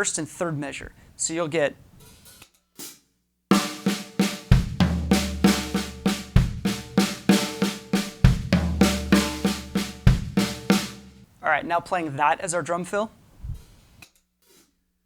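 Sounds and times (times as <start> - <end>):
snare drum strokes: 2.8 - 11.2
floor tom boom: 4.4 - 11.2
bass drum hit: 4.5 - 11.2.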